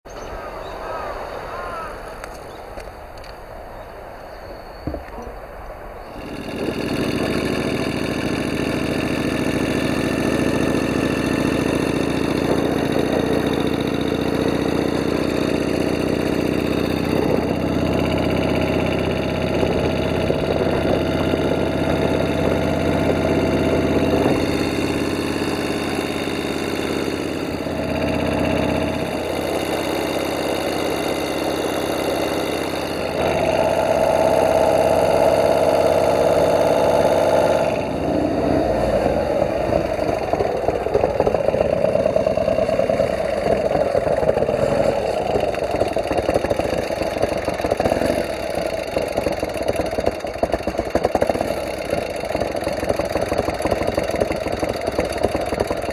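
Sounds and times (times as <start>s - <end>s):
motorcycle engine idling: 6.0s - 55.9s.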